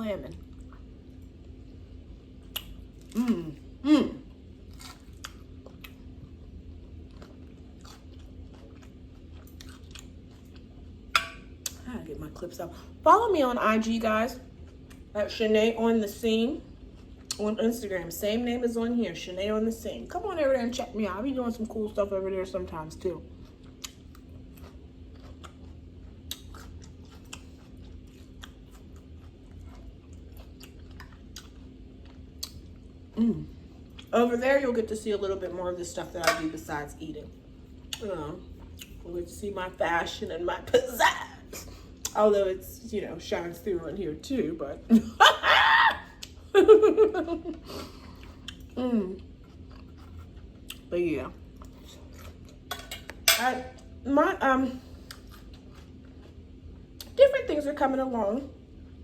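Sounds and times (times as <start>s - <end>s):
faint steady hum: 0.0s - 59.0s
chewing salad: 0.1s - 13.0s, 14.0s - 18.2s, 21.6s - 42.4s, 46.2s - 46.4s, 47.5s - 54.0s, 54.8s - 57.2s.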